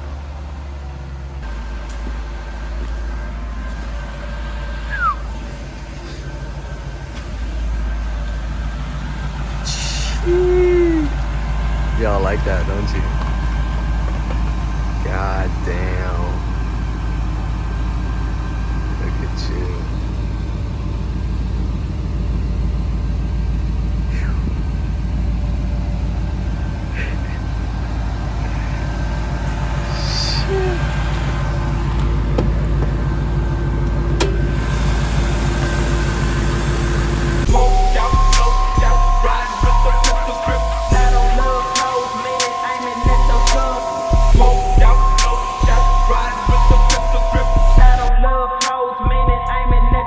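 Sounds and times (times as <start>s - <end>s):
engine exhaust rumble: 0.0s - 50.0s
short falling squeak: 4.8s - 5.3s.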